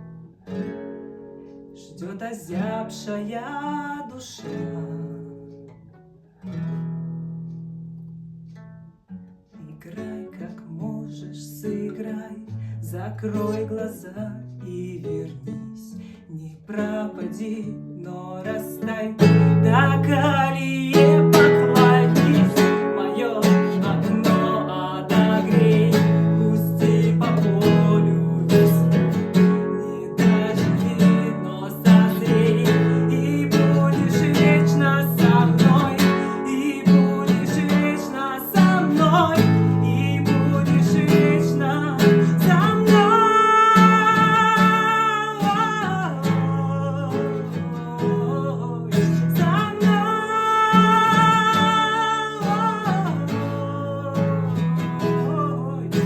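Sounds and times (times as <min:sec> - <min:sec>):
acoustic guitar strumming: 0:00.0 - 0:56.0
person singing long notes: 0:29.8 - 0:56.0.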